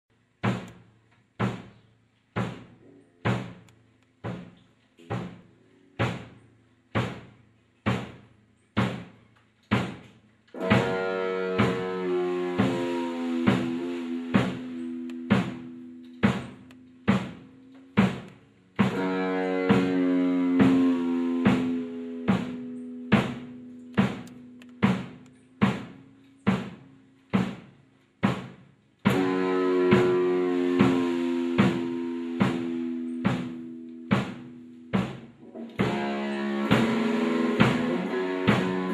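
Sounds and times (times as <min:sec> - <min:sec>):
drum kit beat: 0:00.4 - 0:00.8, 0:01.4 - 0:01.8, 0:02.4 - 0:06.4, 0:07.0 - 0:09.1, 0:09.7 - 0:38.9
sustained instrument long notes: 0:10.5 - 0:27.3, 0:29.0 - 0:38.9.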